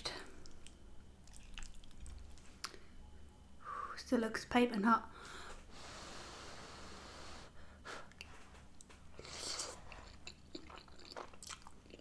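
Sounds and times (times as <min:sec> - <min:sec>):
person blowing on food: 0:05.8 - 0:08.0.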